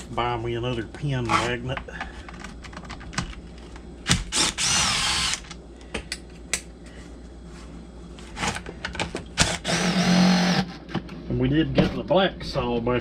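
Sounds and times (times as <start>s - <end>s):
power driver whirring: 4.0s - 5.6s, 9.3s - 10.7s.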